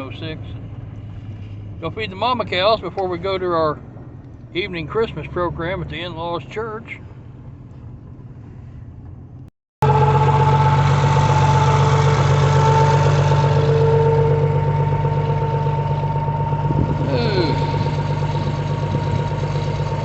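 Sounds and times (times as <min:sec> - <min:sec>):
engine idling with deep hum: 0:00.0 - 0:20.0
steady whine: 0:09.8 - 0:20.0.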